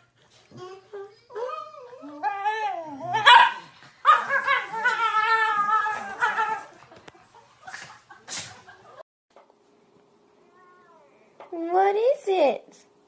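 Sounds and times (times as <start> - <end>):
dog howling: 0.6 - 6.8
dog yelping: 1.3 - 6.7.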